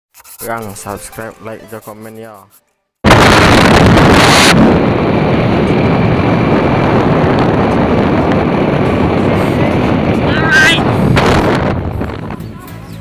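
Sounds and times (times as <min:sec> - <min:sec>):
wind buffeting microphone: 0:03.1 - 0:13.0
moving vehicle running noise: 0:03.8 - 0:13.0.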